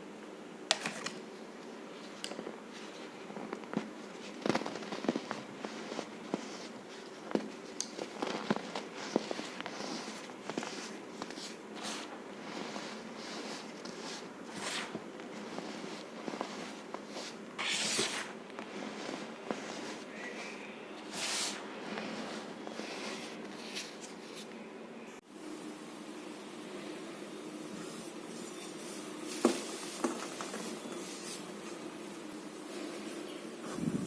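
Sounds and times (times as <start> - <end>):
crunchy powder mixture being crushed: 3.4 - 23.2.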